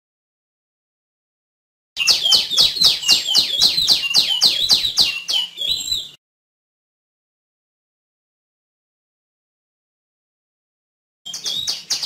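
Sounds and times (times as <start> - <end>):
bird calling sharp falling notes: 2.0 - 6.2.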